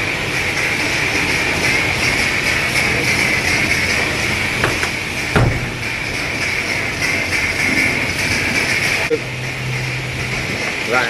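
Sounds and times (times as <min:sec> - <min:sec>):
short knocks: 0:04.6 - 0:06.8.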